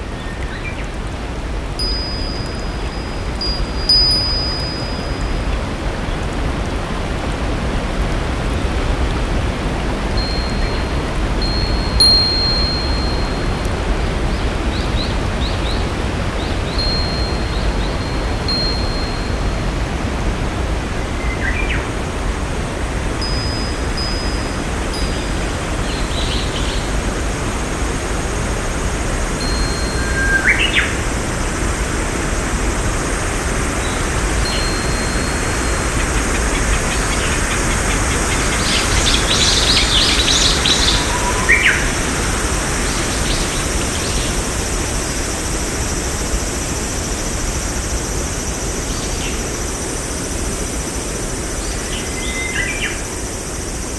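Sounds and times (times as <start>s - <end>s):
birds chirping and whistling: 29.4s - 31.0s, 34.5s - 44.4s.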